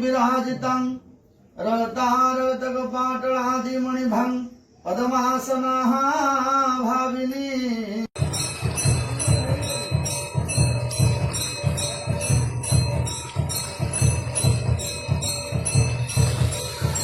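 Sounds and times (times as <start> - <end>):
drum beating fast rhythm: 8.2 - 17.0
jingling bells: 8.2 - 17.0.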